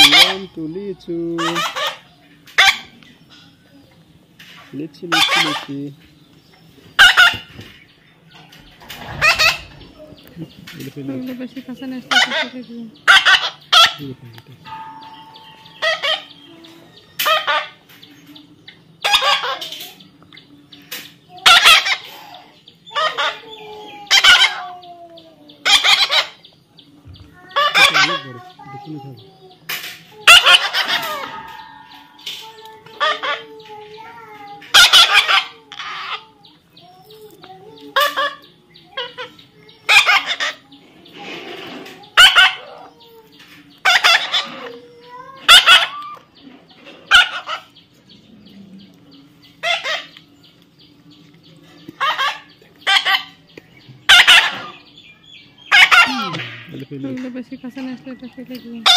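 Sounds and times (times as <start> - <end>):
parrot squawking: 0.0 - 0.5, 1.3 - 2.9, 5.1 - 5.7, 7.0 - 7.5, 8.8 - 10.1, 12.1 - 14.0, 15.7 - 16.4, 17.2 - 17.8, 19.0 - 19.7, 21.4 - 24.9, 25.6 - 26.4, 27.4 - 28.8, 30.2 - 36.3, 38.0 - 43.2, 43.8 - 47.8, 49.6 - 50.2, 52.0 - 53.4, 54.1 - 54.9, 55.6 - 56.5.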